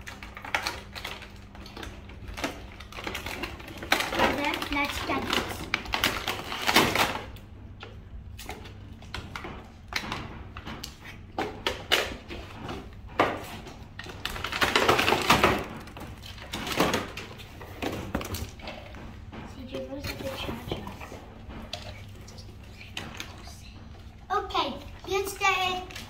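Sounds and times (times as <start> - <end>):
packaging clicks and knocks: 8.5 - 19.1.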